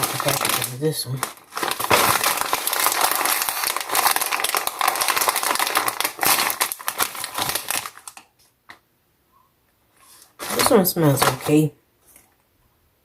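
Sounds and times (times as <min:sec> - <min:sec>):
chip bag crinkling: 0:00.0 - 0:08.3, 0:10.3 - 0:11.7.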